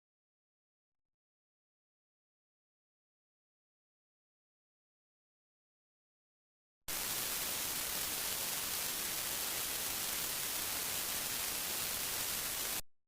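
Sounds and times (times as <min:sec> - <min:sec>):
television static hiss: 0:06.9 - 0:12.8.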